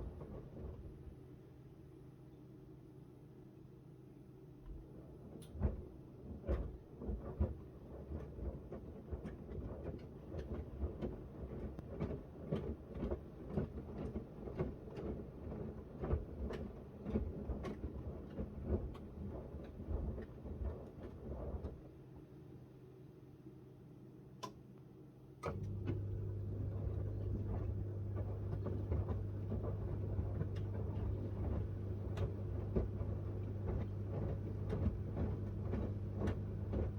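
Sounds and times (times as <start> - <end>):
quiet hum: 22.4 - 36.9.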